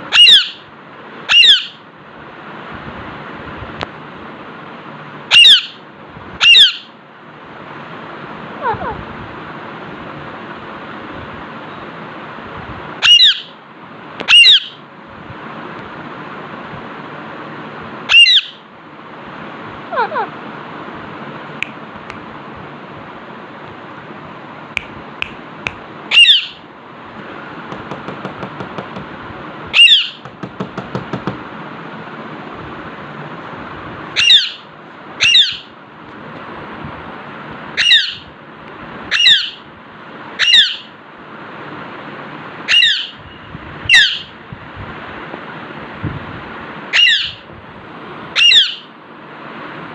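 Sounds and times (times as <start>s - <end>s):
parakeet squawking: 0.0s - 0.6s, 1.3s - 1.8s, 5.3s - 5.8s, 6.4s - 7.0s, 13.0s - 13.6s, 14.3s - 14.8s, 18.1s - 18.6s, 19.9s - 20.4s, 26.1s - 26.6s, 29.7s - 30.2s, 34.2s - 35.8s, 37.8s - 38.3s, 39.1s - 39.6s, 40.4s - 40.9s, 42.7s - 43.2s, 43.9s - 44.3s, 46.9s - 47.5s, 48.4s - 48.9s.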